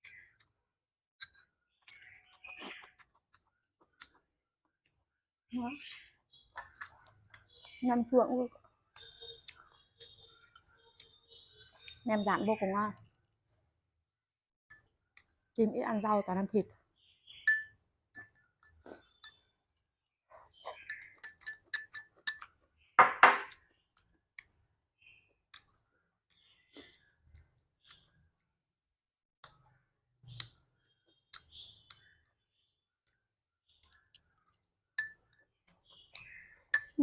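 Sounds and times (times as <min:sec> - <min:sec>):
utensils clinking on ceramic bowl: 0:06.6 - 0:07.1, 0:17.5 - 0:19.4, 0:20.8 - 0:23.2, 0:35.0 - 0:35.2, 0:36.7 - 0:37.0.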